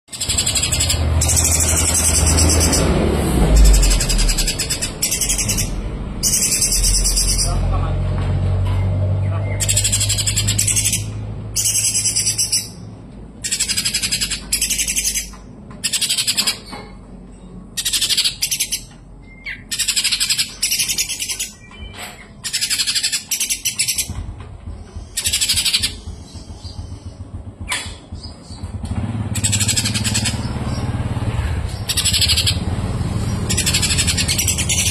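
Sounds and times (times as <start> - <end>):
bird singing high trills: 0.1 - 7.7, 29.4 - 34.9
low hum: 0.3 - 13.4.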